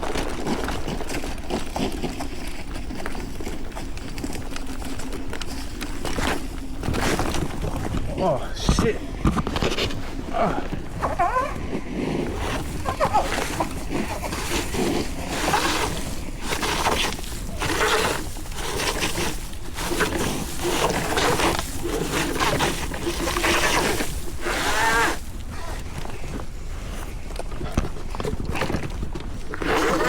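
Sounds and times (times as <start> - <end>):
footsteps on dirt trail: 0.0 - 30.0
heavy breathing: 7.5 - 24.4.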